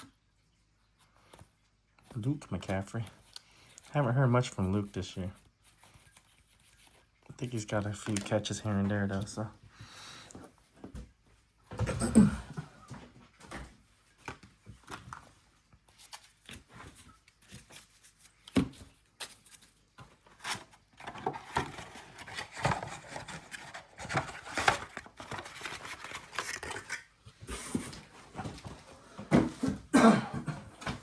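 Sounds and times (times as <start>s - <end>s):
card packs rustling: 2.2s - 9.5s, 14.0s - 29.9s
cards clicking and rubbing: 2.6s - 8.5s, 14.0s - 27.1s.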